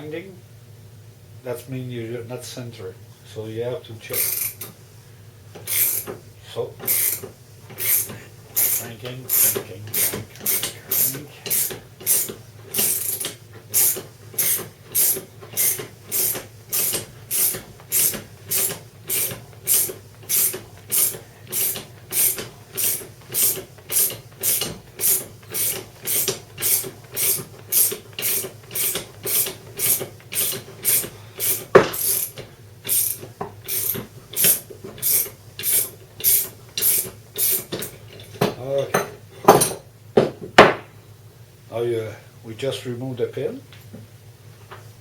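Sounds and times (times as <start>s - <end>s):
ratchet wrench clicking: 4.2s - 4.7s, 5.7s - 6.1s, 6.9s - 37.9s.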